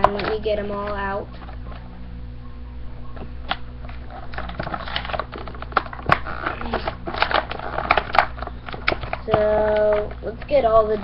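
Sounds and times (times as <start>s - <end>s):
packaging crinkling: 3.1s - 11.0s.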